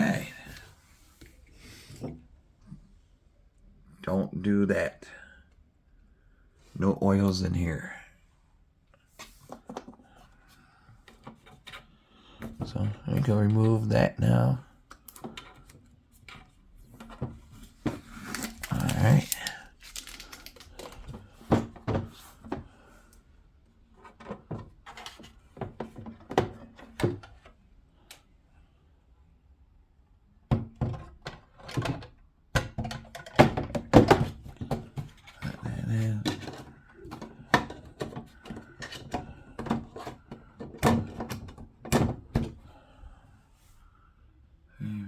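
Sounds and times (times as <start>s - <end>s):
plastic parts clicking and knocking: 14.9s - 22.7s, 24.0s - 28.2s, 30.5s - 42.6s.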